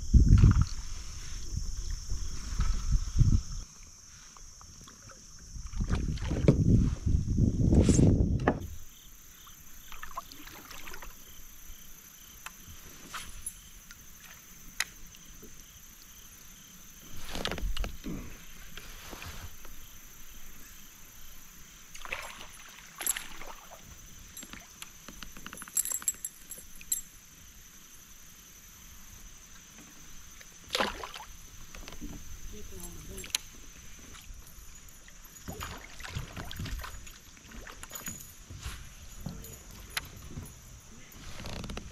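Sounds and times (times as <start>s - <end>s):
kayak splashes: 9.3s - 11.4s, 21.9s - 25.1s, 29.5s - 39.9s.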